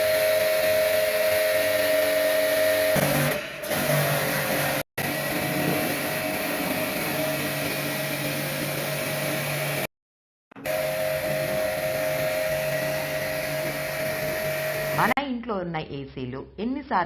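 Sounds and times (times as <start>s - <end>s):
electric motor whirring: 10.6s - 15.2s.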